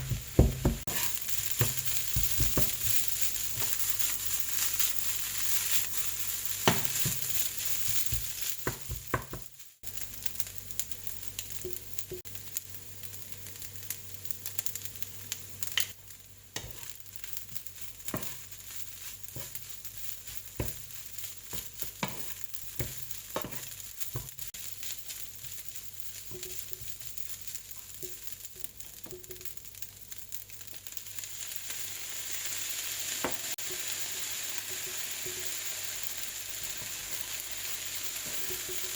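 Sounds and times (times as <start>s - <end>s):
rice sizzling in hot pan: 0.0s - 38.9s
spatula scraping pan: 0.8s - 9.3s.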